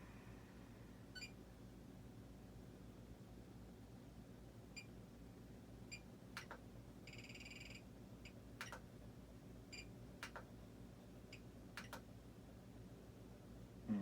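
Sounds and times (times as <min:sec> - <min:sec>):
sharp clicks: 0:10.2 - 0:10.5.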